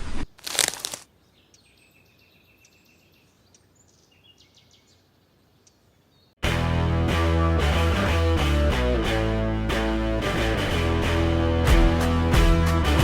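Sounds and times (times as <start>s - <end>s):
faint bird chirps: 1.2s - 6.4s
loud rock music with guitar: 6.4s - 13.0s.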